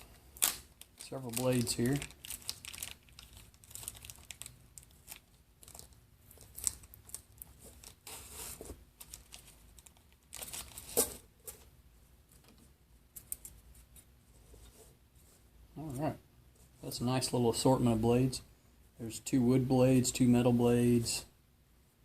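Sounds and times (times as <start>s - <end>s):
packaging crinkling and tearing: 0.4s - 8.3s, 9.0s - 11.1s.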